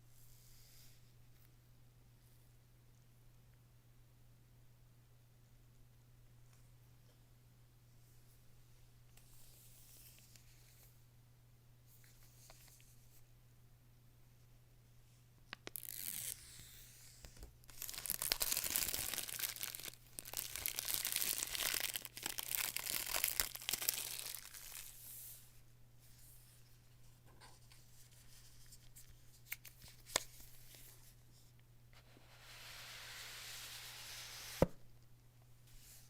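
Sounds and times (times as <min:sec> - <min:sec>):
soft handling noises: 0:11.9 - 0:13.4, 0:24.2 - 0:32.5
packaging tearing and crinkling: 0:17.7 - 0:24.9.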